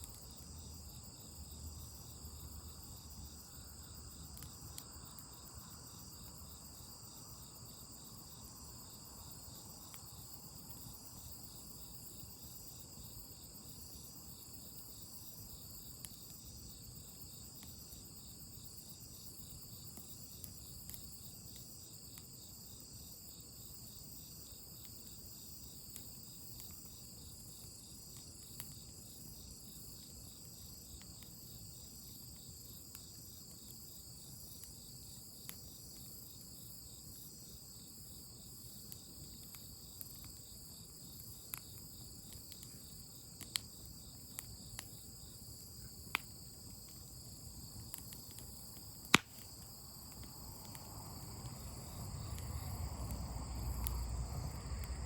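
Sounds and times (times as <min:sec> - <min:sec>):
crickets chirping: 0:00.0 - 0:55.0
faint sharp clicks: 0:41.2 - 0:42.8, 0:43.4 - 0:43.7, 0:44.3 - 0:44.9, 0:46.1 - 0:46.3, 0:47.8 - 0:54.1.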